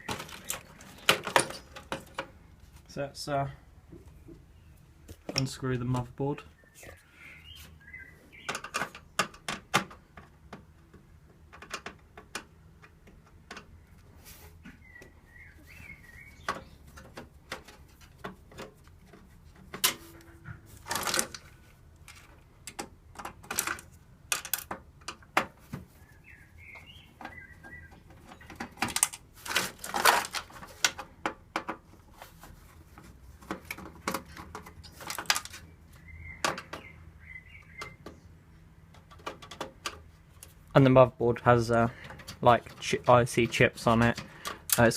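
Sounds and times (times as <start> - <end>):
screwdriver and metal parts clattering: 0.0 - 2.3, 16.4 - 25.2, 28.1 - 31.1, 33.4 - 35.6
bird chirping: 6.4 - 8.7, 14.6 - 17.0, 25.9 - 28.8, 35.6 - 38.3.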